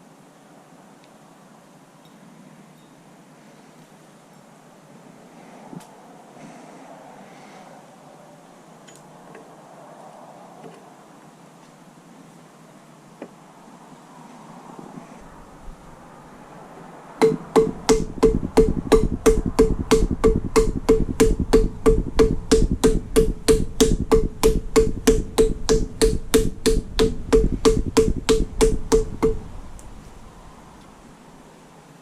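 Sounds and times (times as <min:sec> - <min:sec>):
metal-on-metal strikes ringing: 0:17.2 - 0:29.8.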